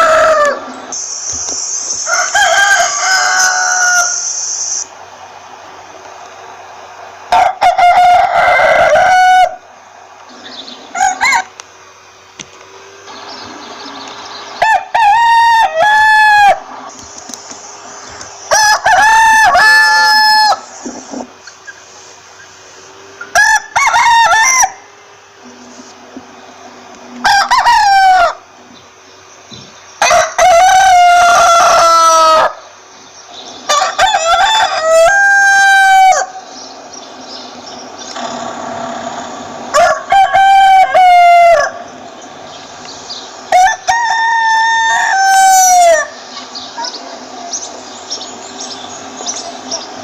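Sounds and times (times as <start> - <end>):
rooster crowing: 0.0 - 0.8, 2.0 - 4.6, 7.3 - 9.8, 10.8 - 11.6, 14.6 - 17.0, 18.4 - 20.7, 23.2 - 25.6, 27.1 - 28.6, 30.0 - 32.7, 33.6 - 36.6, 39.0 - 42.0, 43.5 - 46.4.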